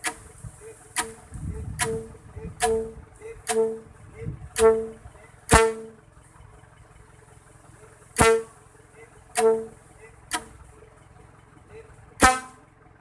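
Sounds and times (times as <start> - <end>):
vehicle horn blasts: 1.8 - 6.0, 8.2 - 8.6, 9.3 - 9.8, 12.2 - 12.7.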